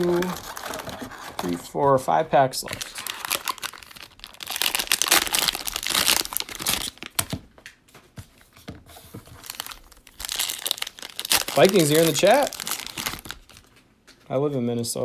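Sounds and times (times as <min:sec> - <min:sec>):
cellophane wrapper crinkling: 0:00.0 - 0:01.7, 0:02.6 - 0:07.4, 0:08.9 - 0:13.8.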